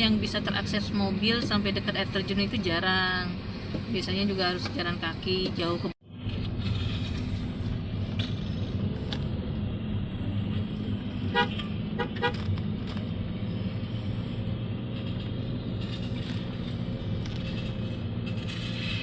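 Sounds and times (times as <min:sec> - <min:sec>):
car engine and road noise: 0:00.0 - 0:19.0
car horn toots: 0:11.3 - 0:12.5.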